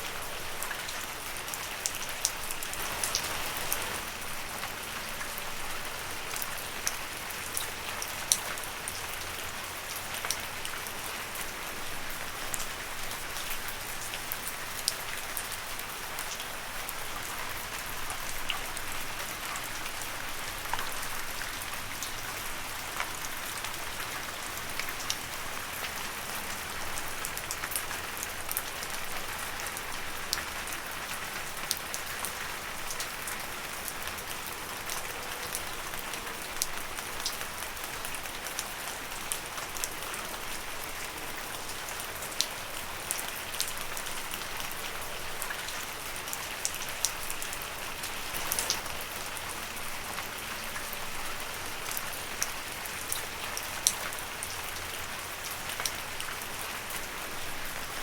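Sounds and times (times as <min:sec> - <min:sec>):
rain falling: 0:00.0 - 0:58.0
water drips: 0:01.8 - 0:04.2.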